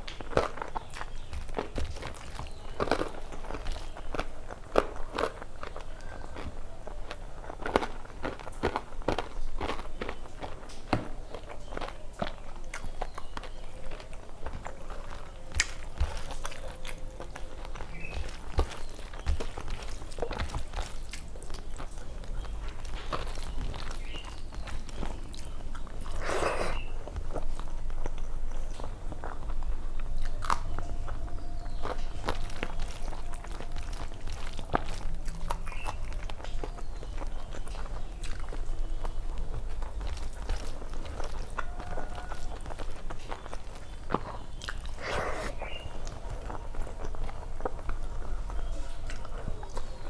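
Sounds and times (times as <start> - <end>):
person chewing and crunching food: 0.0 - 50.0
mouth clicks: 24.9 - 27.2, 44.1 - 47.2.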